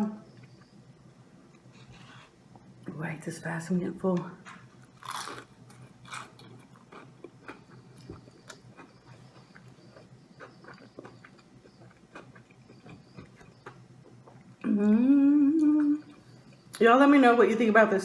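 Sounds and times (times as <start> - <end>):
faint steady hum: 0.0 - 18.0
close-up chewing of food: 4.8 - 14.6
person humming a note: 14.6 - 16.0.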